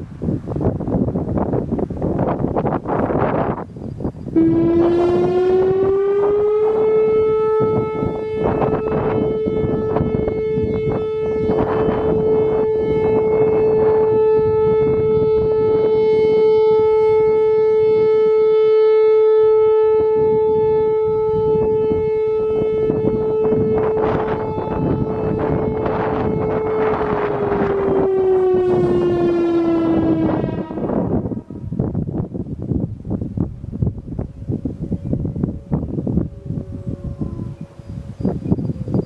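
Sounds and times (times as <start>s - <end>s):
warning siren steady tone: 0.0s - 39.0s
wind noise on microphone: 0.0s - 39.0s.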